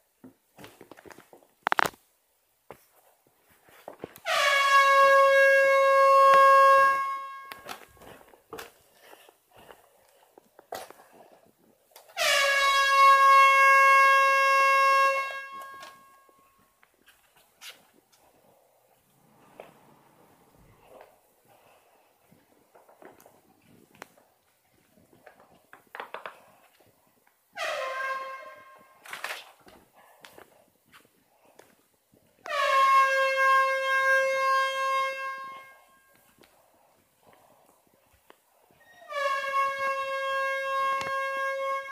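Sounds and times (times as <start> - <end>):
air horn blast: 4.2 - 8.2, 12.2 - 16.6, 27.6 - 29.3, 32.4 - 36.2, 39.1 - 41.9.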